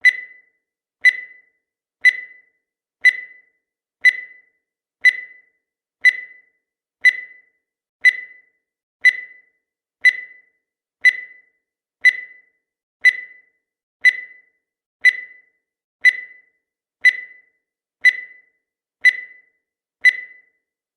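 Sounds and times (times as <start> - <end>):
short high-pitched beeps: 0.0 - 20.6.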